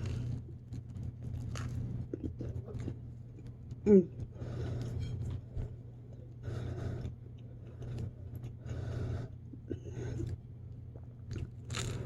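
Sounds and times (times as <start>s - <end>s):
person chewing crunchy sandwich: 0.0s - 3.5s, 4.3s - 12.0s.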